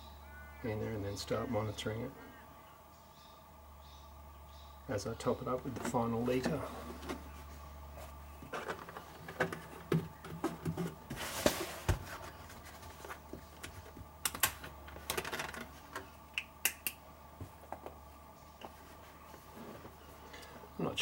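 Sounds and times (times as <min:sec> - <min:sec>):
plastic oil bottles being handled: 0:05.6 - 0:14.1.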